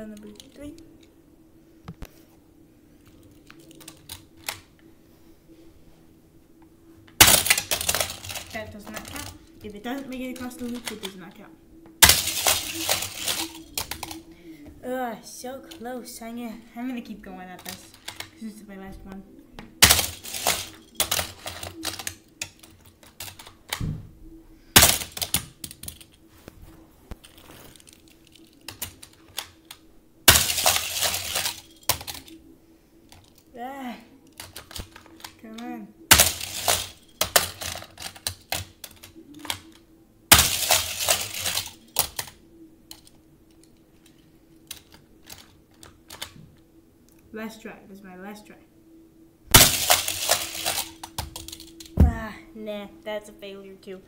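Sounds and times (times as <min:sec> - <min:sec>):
toy car crashing onto plastic track: 0:07.2 - 0:09.3, 0:12.0 - 0:14.2, 0:19.8 - 0:22.6, 0:24.8 - 0:26.0, 0:30.3 - 0:32.3, 0:36.1 - 0:39.0, 0:40.3 - 0:42.3, 0:49.5 - 0:52.0.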